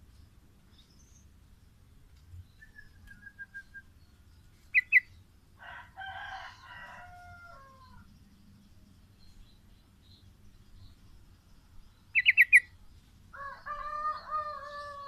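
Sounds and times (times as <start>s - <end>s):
bird trilling: 4.7s - 5.2s, 12.2s - 12.7s
rooster crowing: 5.6s - 8.0s, 13.3s - 15.0s.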